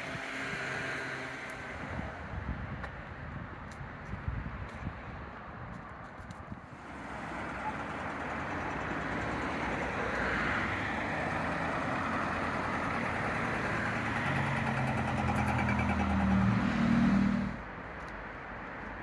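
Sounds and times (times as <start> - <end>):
vehicle engine hum: 6.1 - 19.0.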